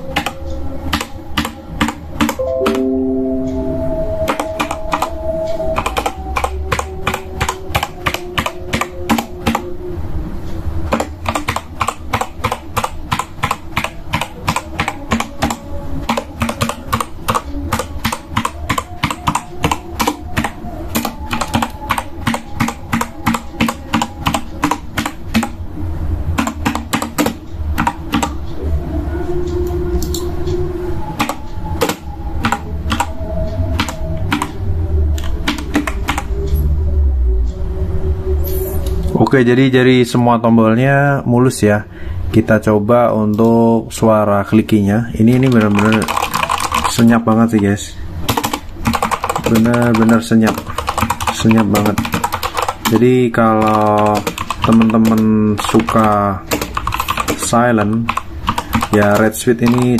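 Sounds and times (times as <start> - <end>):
typing on mechanical keyboard: 10.9 - 25.5, 31.2 - 33.1, 33.7 - 34.5, 35.2 - 36.3, 45.2 - 47.6, 48.3 - 59.9.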